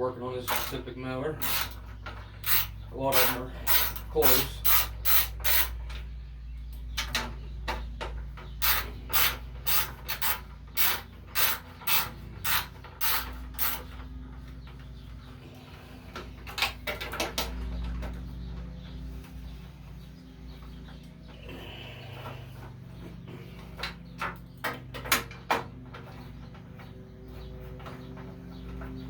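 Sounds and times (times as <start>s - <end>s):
socket ratchet clicking: 1.4s - 1.8s, 2.4s - 5.7s.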